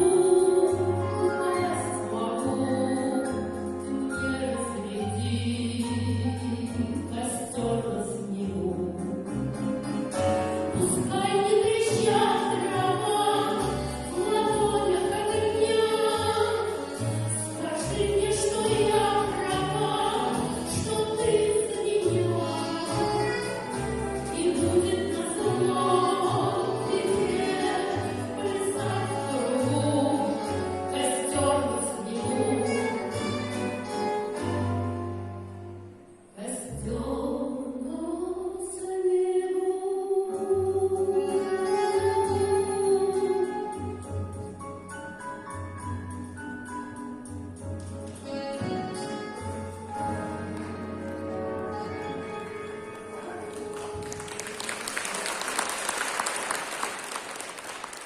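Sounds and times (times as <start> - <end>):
woman singing pop ballad: 0.0 - 9.3, 10.7 - 33.2, 36.4 - 44.0
instrumental accompaniment: 0.0 - 36.4, 40.6 - 58.0.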